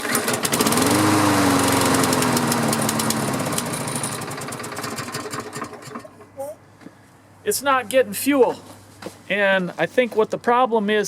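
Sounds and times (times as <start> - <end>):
push mower engine running down: 0.0 - 6.1.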